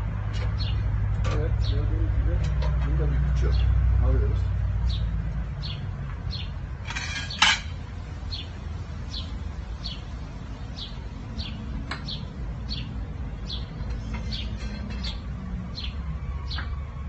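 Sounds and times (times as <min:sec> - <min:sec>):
bird chirping: 0:08.3 - 0:16.9.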